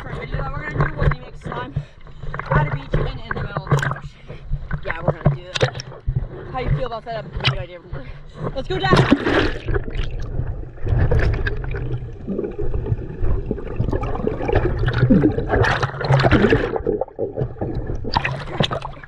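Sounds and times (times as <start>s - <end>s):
underwater water gurgling: 0.0s - 19.0s
bubbles bursting: 2.3s - 4.1s, 8.8s - 19.0s.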